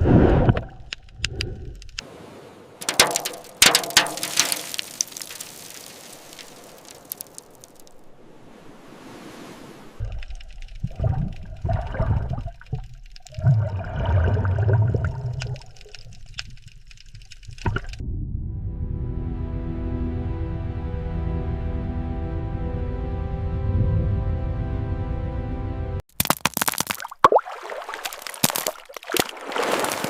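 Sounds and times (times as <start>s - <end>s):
water splashing and rushing: 0.0s - 18.0s, 26.3s - 30.0s
heavy low water surges: 2.1s - 10.1s.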